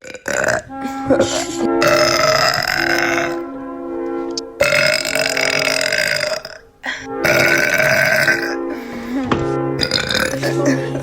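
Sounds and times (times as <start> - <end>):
woman belching loudly: 0.0 - 0.7, 1.8 - 3.4, 4.6 - 6.6, 7.2 - 8.6, 9.8 - 10.8
background music: 0.0 - 11.0.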